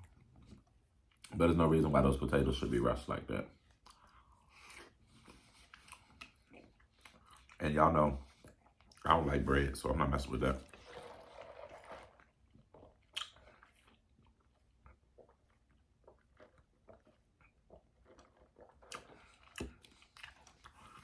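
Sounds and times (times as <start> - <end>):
mouth chewing clicks and smacks: 0.0 - 1.4, 3.6 - 7.6, 8.2 - 9.2, 12.5 - 21.0.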